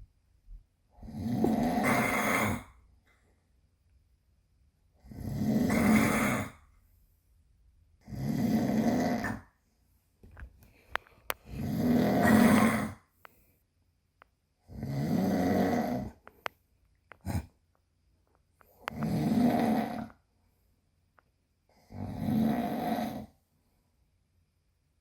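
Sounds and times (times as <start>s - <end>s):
man snoring: 1.0s - 2.7s, 5.1s - 6.6s, 8.1s - 9.4s, 11.5s - 13.0s, 14.7s - 16.2s, 18.9s - 20.1s, 21.9s - 23.3s.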